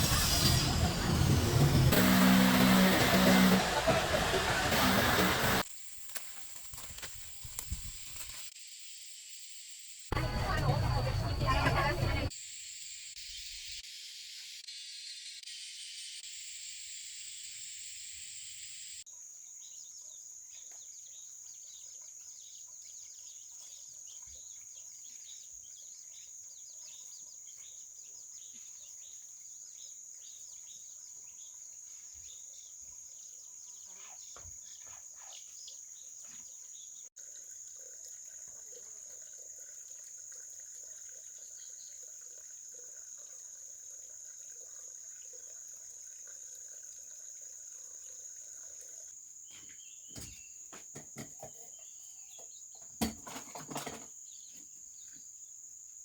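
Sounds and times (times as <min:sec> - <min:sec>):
insects droning: 0:05.6 - 0:19.2, 0:36.0 - 0:56.0.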